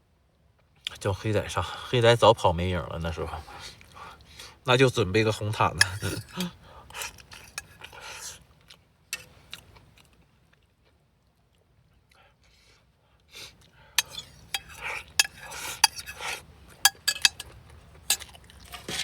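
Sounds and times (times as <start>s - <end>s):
utensils clinking against cookware: 5.7s - 7.9s, 14.0s - 19.0s.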